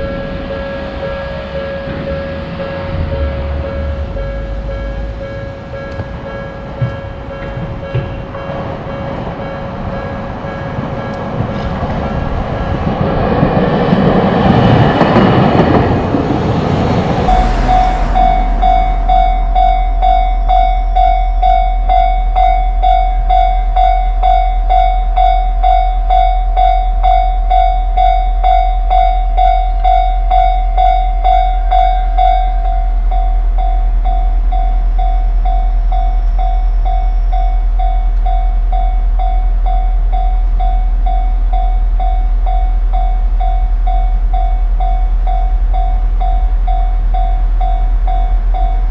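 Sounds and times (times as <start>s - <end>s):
train rushing past: 0.0s - 23.4s
level crossing warning bell: 0.0s - 48.9s.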